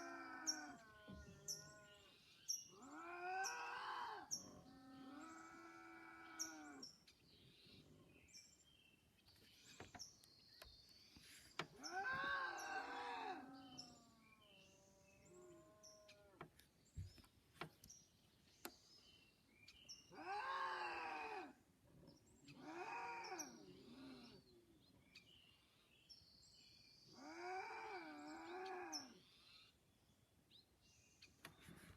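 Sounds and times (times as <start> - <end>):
animal wailing calls: 11.7 - 14.2, 20.2 - 21.6.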